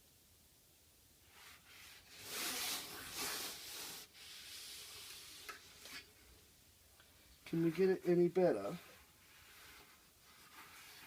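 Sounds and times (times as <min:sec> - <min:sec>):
hands rubbing foam matting: 0:01.3 - 0:06.0, 0:07.6 - 0:11.0.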